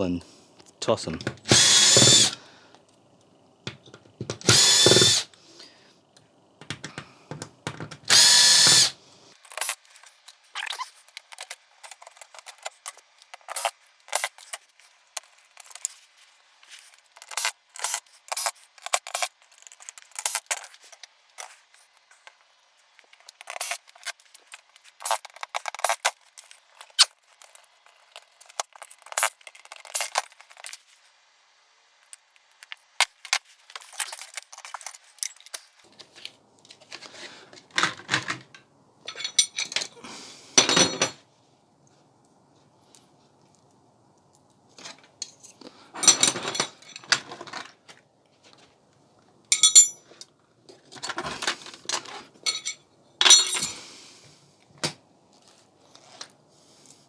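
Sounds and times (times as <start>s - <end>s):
screws and plastic parts rattling: 1.4s - 2.4s, 4.3s - 5.3s, 6.6s - 31.2s, 32.0s - 35.9s
power drill whining: 1.5s - 2.4s, 4.4s - 5.3s, 8.1s - 9.8s.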